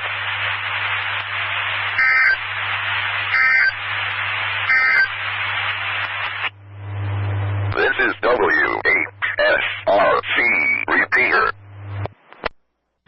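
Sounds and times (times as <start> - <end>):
radio hiss: 0.0 - 12.5
warbling digital data tones: 4.7 - 5.2
low hum: 5.2 - 7.8, 10.7 - 12.4.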